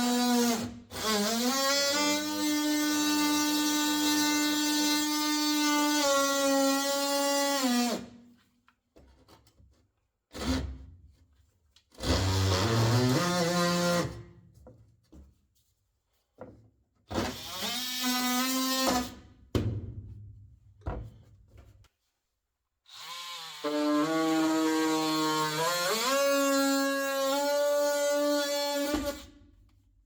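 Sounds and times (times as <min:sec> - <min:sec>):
oscillating multi-tool cutting wood: 0:22.9 - 0:29.2.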